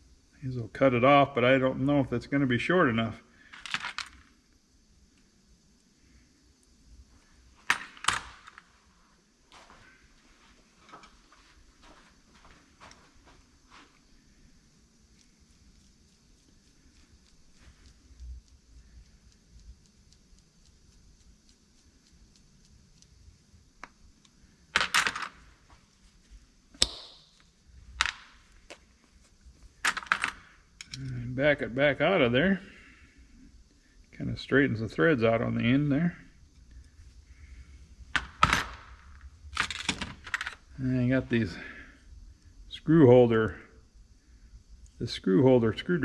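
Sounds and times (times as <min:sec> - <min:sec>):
small screws being handled: 0:03.5 - 0:04.4, 0:23.8 - 0:25.7, 0:26.8 - 0:31.2, 0:38.1 - 0:40.7
sharp metallic snaps: 0:26.7 - 0:28.8.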